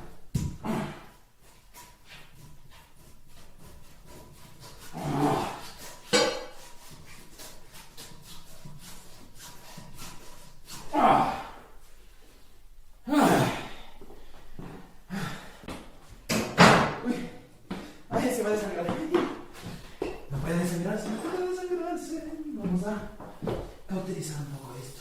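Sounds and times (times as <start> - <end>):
person groaning and gasping: 13.0 - 14.0.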